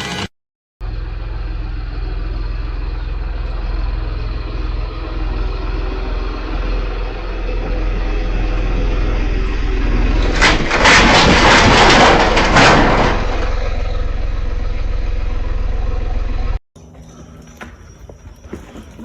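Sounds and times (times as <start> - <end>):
rough engine burst: 0.0 - 16.6
engine running: 0.0 - 17.7.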